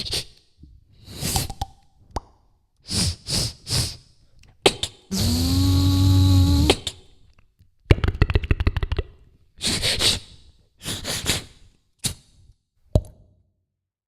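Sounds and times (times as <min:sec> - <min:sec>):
mouth hissing bursts: 0:05.1 - 0:06.9.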